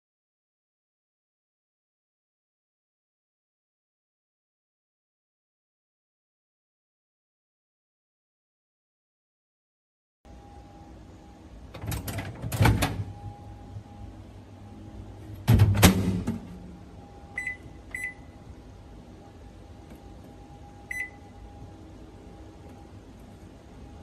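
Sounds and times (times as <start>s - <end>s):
steady low hum: 10.3s - 24.0s
loud clunk: 15.4s - 16.8s
microwave clattering knocks: 15.4s - 16.8s
high keypad beeps: 17.2s - 18.4s, 20.7s - 21.4s.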